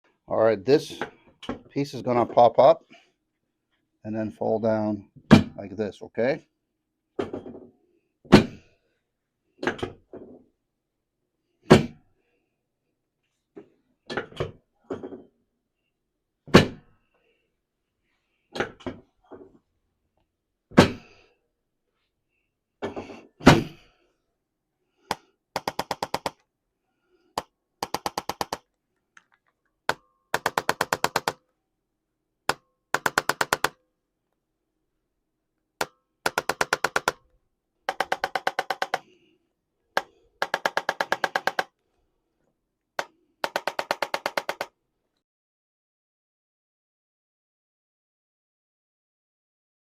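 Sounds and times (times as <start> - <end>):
adjusting instrument rapid clicks: 27.4 - 31.4, 32.5 - 33.8, 36.2 - 37.2, 37.9 - 39.0, 40.0 - 41.7, 43.0 - 44.7.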